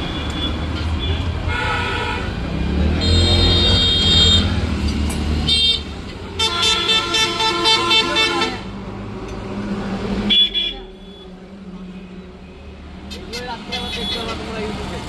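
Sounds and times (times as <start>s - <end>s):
vehicle horns honking: 0.0s - 4.7s, 5.4s - 8.8s, 10.2s - 11.4s, 13.0s - 14.7s
traffic engine rumble: 0.0s - 15.0s.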